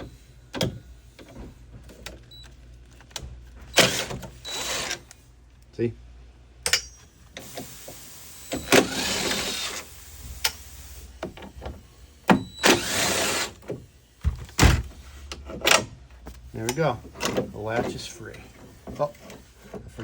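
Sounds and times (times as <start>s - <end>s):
cordless driver whirring: 3.8s - 5.2s, 8.4s - 9.9s, 12.6s - 13.6s.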